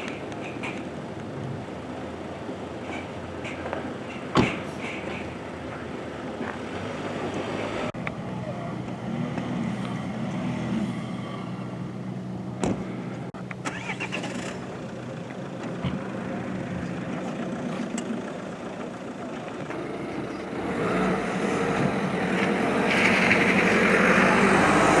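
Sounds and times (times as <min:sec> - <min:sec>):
engine running: 0:00.0 - 0:25.0.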